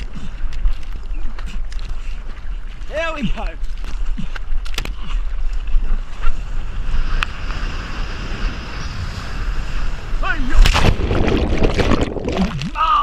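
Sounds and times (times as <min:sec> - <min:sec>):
wind rumbling on microphone: 0:00.0 - 0:13.0
ocean surf: 0:06.0 - 0:13.0.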